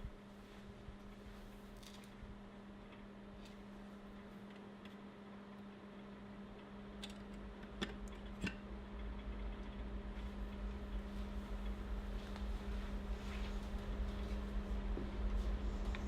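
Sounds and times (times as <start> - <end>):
steady low hum: 0.0 - 16.0
low rumble: 8.7 - 16.0.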